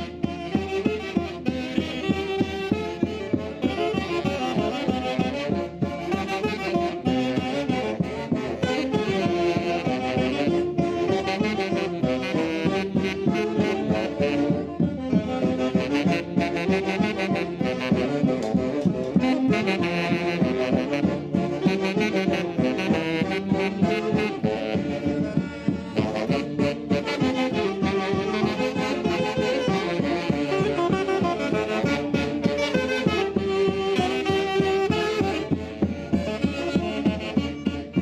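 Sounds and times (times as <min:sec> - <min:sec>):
saxophone-led folk orchestra: 0:00.0 - 0:38.0.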